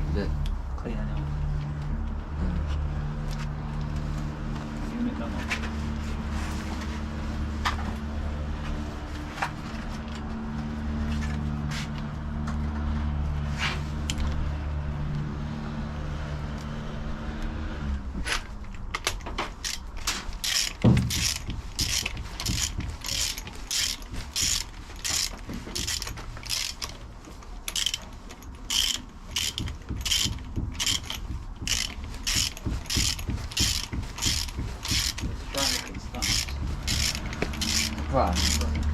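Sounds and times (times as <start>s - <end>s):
ratchet wrench clicking: 19.0s - 27.0s, 27.7s - 38.9s.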